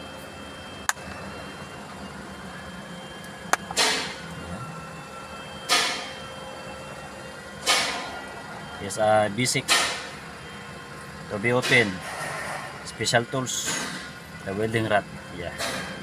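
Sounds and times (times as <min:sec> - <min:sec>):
steady low hum: 0:00.0 - 0:15.6.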